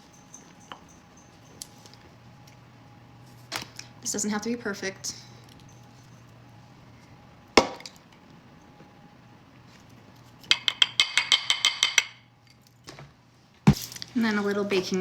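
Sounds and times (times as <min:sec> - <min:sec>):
ringing clinks on bowl: 0:00.0 - 0:01.6.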